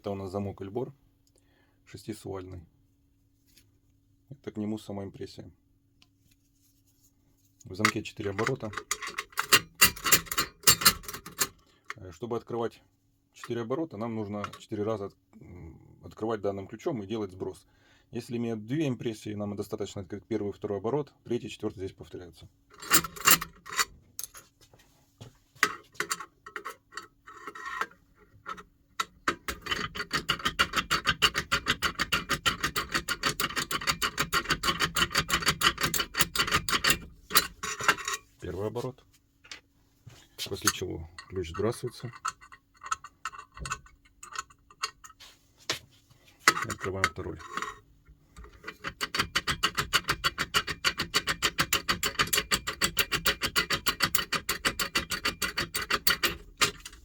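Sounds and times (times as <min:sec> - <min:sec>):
lock pick clicking against levers: 0:08.4 - 0:11.5, 0:48.7 - 0:57.0.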